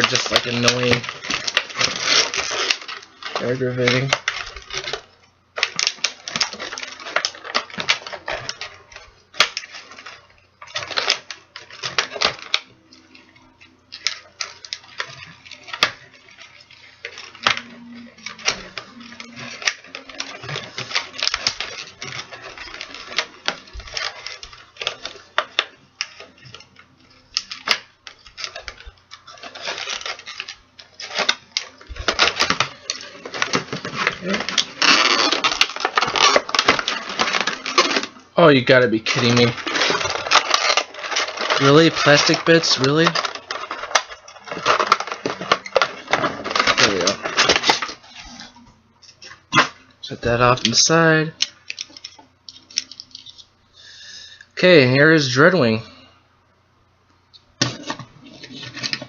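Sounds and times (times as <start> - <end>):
plastic pieces clicking and rattling: 0.0 - 48.5, 49.1 - 53.5, 57.6 - 59.0
crinkly plastic packaging: 0.0 - 56.2, 57.3 - 59.0.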